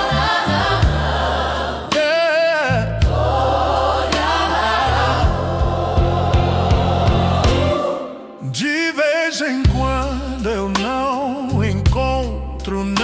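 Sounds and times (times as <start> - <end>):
bass: 0.0 - 2.1, 2.7 - 7.9, 9.7 - 13.0
choir-like backing vocals: 0.0 - 11.5
singer with vibrato: 0.0 - 13.0
drum hits: 5.2 - 8.0.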